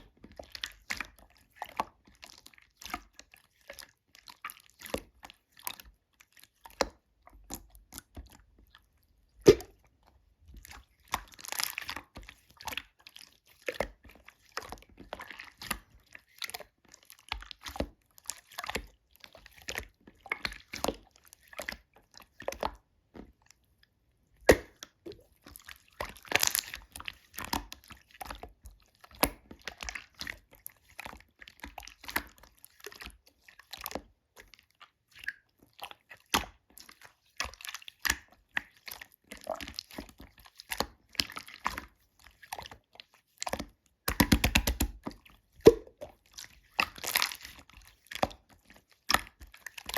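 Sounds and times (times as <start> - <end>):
slime squished by hand: 9.4 - 9.9, 24.4 - 28.4, 44.1 - 48.4.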